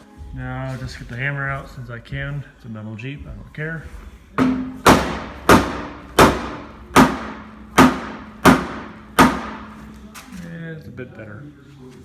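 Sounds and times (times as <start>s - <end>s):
hammer striking steel: 4.4s - 9.8s.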